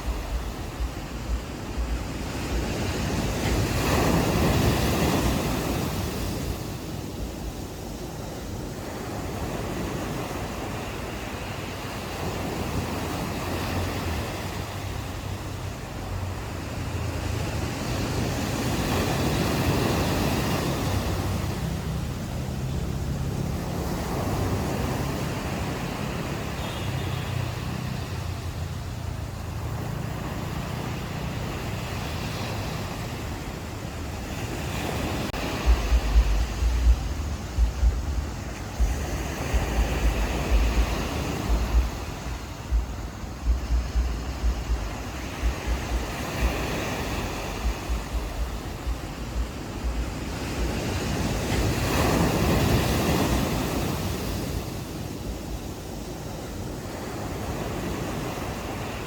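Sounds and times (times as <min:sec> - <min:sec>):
ocean waves on shore: 0:00.0 - 0:59.0
low rumble: 0:35.3 - 0:46.6, 0:47.2 - 0:50.7
sharp low thumps: 0:35.6 - 0:50.2.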